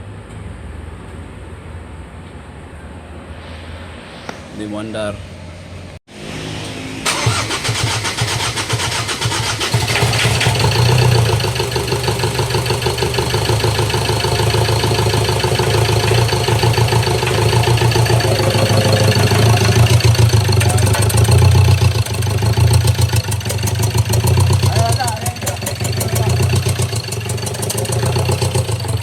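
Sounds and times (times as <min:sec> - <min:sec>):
diesel engine cranking: 0:07.0 - 0:29.0.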